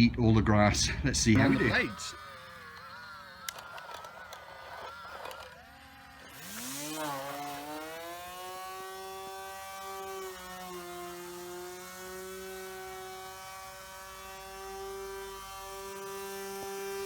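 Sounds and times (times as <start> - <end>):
electric blade motor whine: 1.3 - 17.0
clicks: 2.5 - 7.1.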